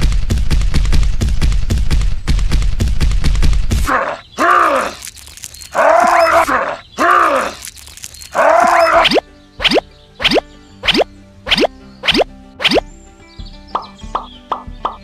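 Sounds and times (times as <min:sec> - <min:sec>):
animal-like calls: 0:03.8 - 0:12.8
rapid clatter of clicks: 0:05.0 - 0:05.8, 0:07.6 - 0:08.4.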